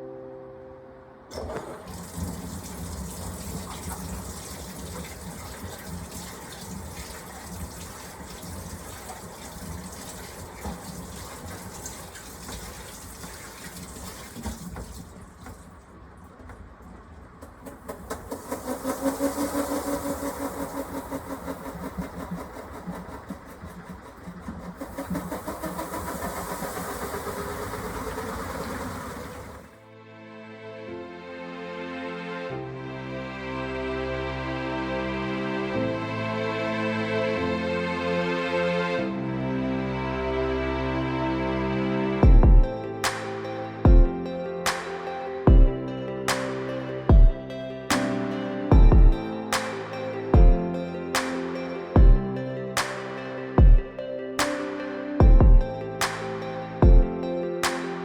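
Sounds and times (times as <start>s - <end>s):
washing machine churning water: 1.3s - 29.8s.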